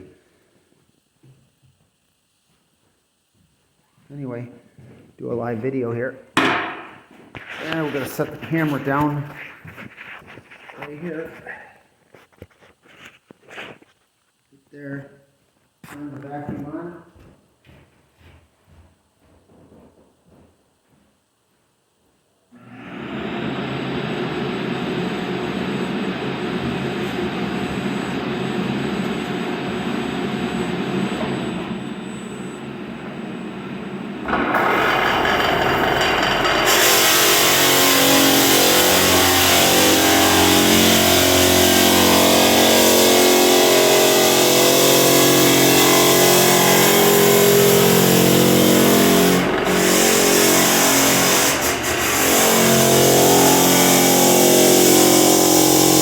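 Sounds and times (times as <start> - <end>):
floor drum sander: 7.4 - 10.7, 34.2 - 56.0
vacuum running: 22.6 - 56.0.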